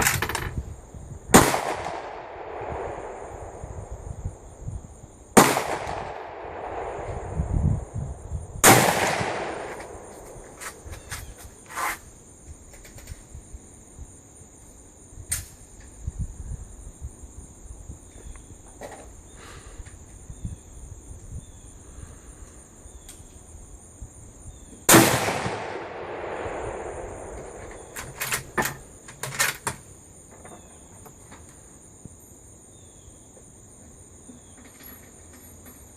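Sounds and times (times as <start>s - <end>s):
insects droning: 0.0s - 35.9s
rifle shots echoing: 1.3s - 4.0s, 5.4s - 7.4s, 8.6s - 10.5s, 24.9s - 28.6s.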